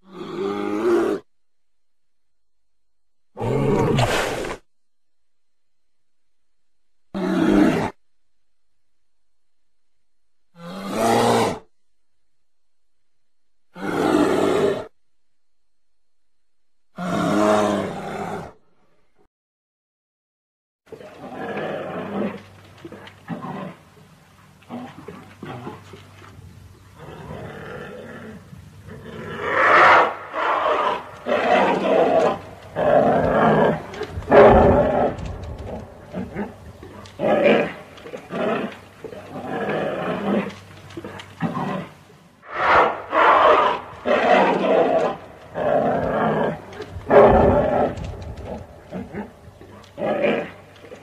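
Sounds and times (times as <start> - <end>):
bear growling and roaring: 0.0 - 1.3, 3.3 - 4.6, 7.1 - 8.0, 10.5 - 11.7, 13.7 - 15.0, 16.9 - 18.6, 20.9 - 23.9, 24.6 - 26.1, 27.0 - 51.0.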